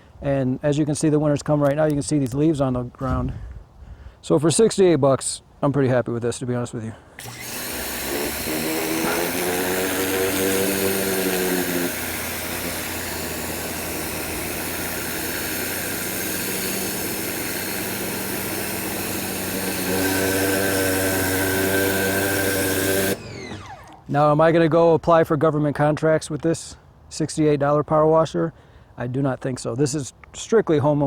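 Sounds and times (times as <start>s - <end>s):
pressure washer running: 7.2s - 24.0s.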